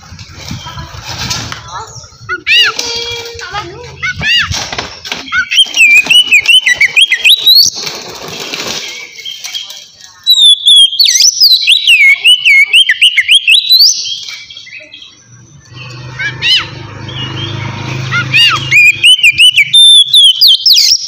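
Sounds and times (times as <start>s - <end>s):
bird singing whistles and chirps: 4.0s - 7.8s, 9.0s - 21.0s.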